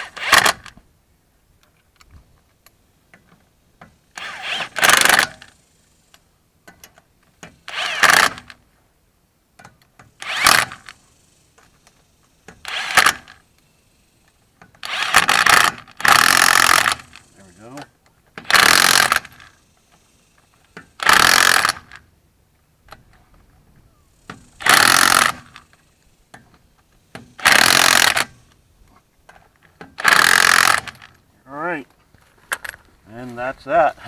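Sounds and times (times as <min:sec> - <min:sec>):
impact wrench bursts: 0:00.0 - 0:00.7, 0:04.1 - 0:05.7, 0:07.5 - 0:08.6, 0:10.1 - 0:11.6, 0:12.4 - 0:14.1, 0:14.8 - 0:17.8, 0:18.4 - 0:22.1, 0:24.2 - 0:26.1, 0:27.0 - 0:28.6, 0:29.9 - 0:31.2.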